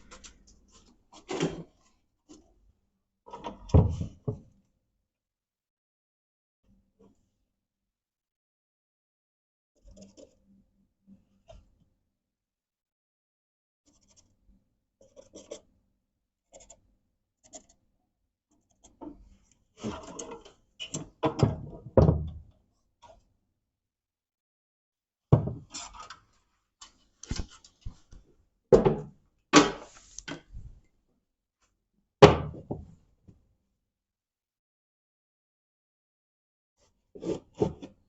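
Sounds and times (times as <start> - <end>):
knocks and scraping of hand work: 18.6 - 22.4, 25.4 - 30.8, 37.2 - 38.0.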